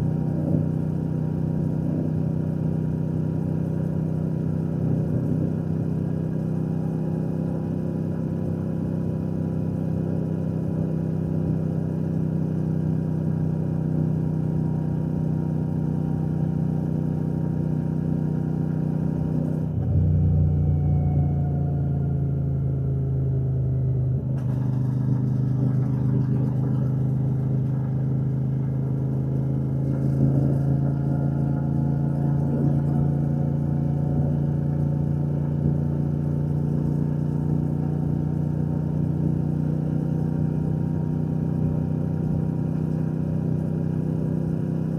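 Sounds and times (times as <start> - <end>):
motorcycle engine and exhaust running: 0.0 - 44.9.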